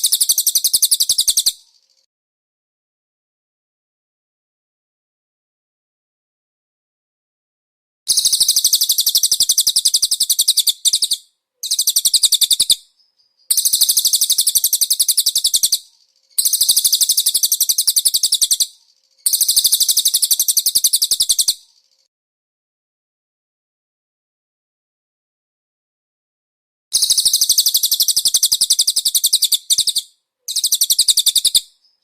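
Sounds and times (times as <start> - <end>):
bird high-pitched rapid trill: 0.0 - 2.1, 8.1 - 12.8, 13.5 - 22.1, 27.0 - 32.0.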